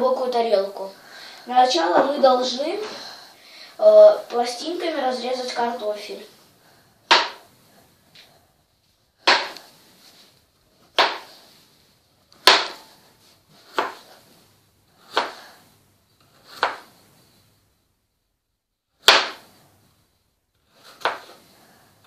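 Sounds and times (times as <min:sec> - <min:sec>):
knife slicing potato: 0:10.9 - 0:11.4, 0:13.5 - 0:14.3, 0:14.9 - 0:15.6, 0:16.2 - 0:17.0, 0:19.0 - 0:19.5, 0:20.7 - 0:21.5.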